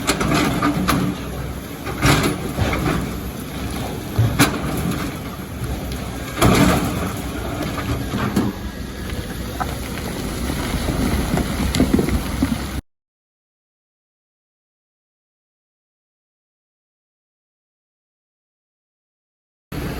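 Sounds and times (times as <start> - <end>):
excavator engine rumbling: 0.0 - 12.8
rock and sand crashing: 0.0 - 12.8.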